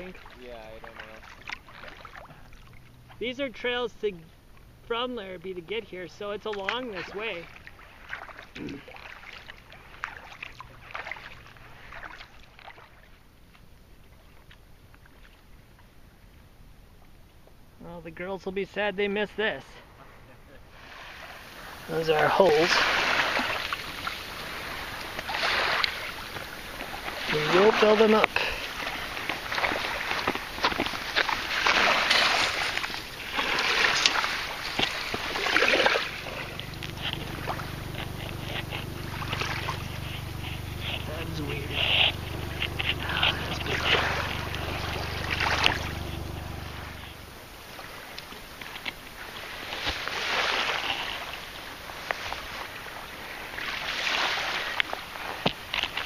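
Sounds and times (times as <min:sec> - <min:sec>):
paddle splashing in water: 0:00.0 - 0:03.2, 0:06.5 - 0:15.9, 0:20.7 - 0:56.0
low steady hum: 0:00.0 - 0:53.8
shovel scraping wet sand and gravel: 0:22.0 - 0:46.6.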